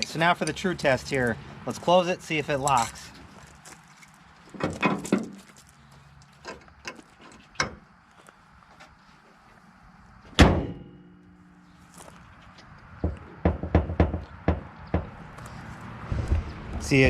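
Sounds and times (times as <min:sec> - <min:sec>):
car hood slamming: 0:10.3 - 0:11.0.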